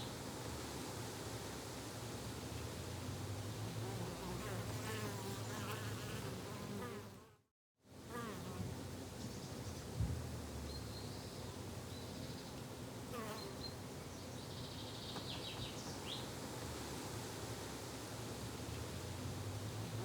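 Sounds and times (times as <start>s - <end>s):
low thump: 10.0s - 10.3s.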